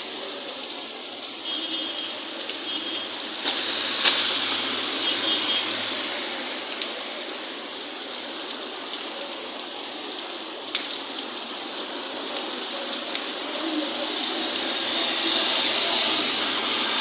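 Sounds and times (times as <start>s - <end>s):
storm water rushing: 1.6s - 8.7s.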